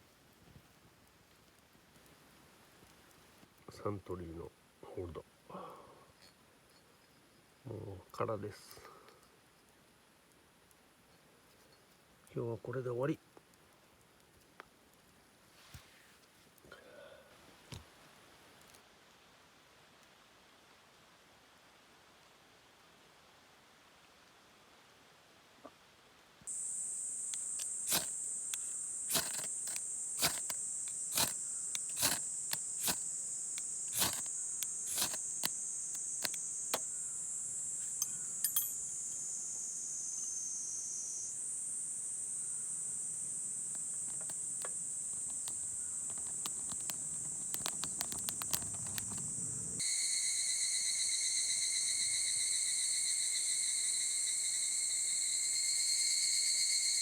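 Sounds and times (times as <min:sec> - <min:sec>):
campfire crackling pops: 0:26.5 - 0:39.2, 0:42.8 - 0:49.8
crickets and insects trilling: 0:26.5 - 0:57.0.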